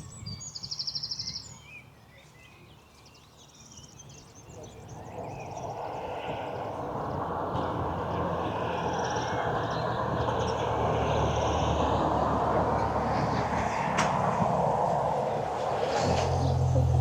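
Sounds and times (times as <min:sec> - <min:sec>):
motor vehicle running: 0:06.2 - 0:17.0.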